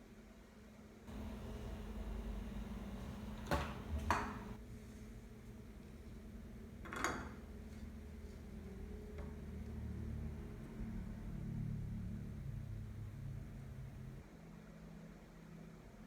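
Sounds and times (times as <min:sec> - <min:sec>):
kitchenware knocks: 0:01.1 - 0:04.6
steady low hum: 0:01.1 - 0:04.6.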